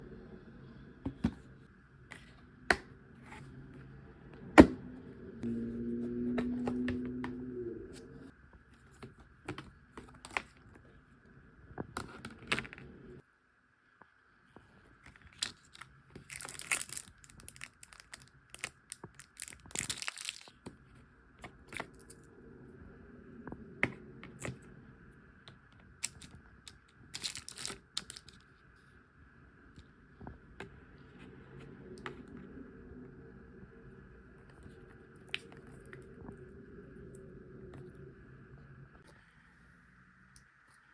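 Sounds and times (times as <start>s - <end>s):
packaging tearing and crinkling: 15.3s - 20.6s, 27.2s - 28.4s.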